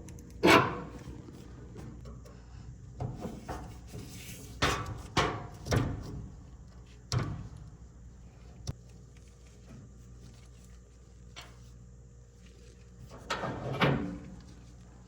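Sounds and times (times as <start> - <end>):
dryer parts knocking and clunking: 3.0 - 8.0.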